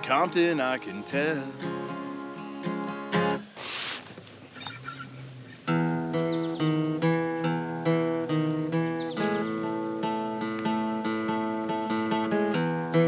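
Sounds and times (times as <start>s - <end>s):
acoustic guitar strumming: 0.0s - 13.0s
short hiss: 3.2s - 5.7s.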